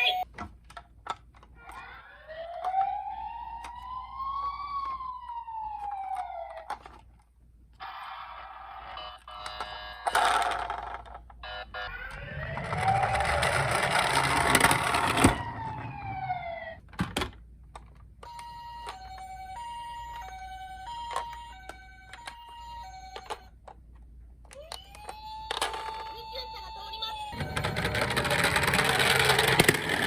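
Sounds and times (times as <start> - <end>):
electronic siren wail: 0.0 - 0.2, 1.6 - 6.8, 11.4 - 16.8, 24.7 - 28.6
two-tone hi-lo siren: 0.0 - 0.2, 1.8 - 6.7, 11.4 - 16.8, 18.2 - 23.5, 24.7 - 28.5.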